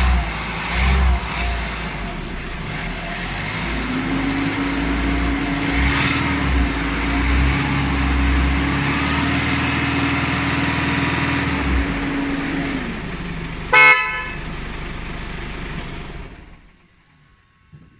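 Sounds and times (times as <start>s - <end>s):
car engine running: 0.0s - 17.4s
car horn toot: 13.7s - 14.6s.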